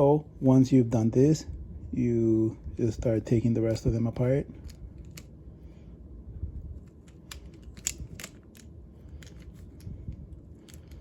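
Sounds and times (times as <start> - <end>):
plastic cube pieces clicking: 7.0 - 9.6.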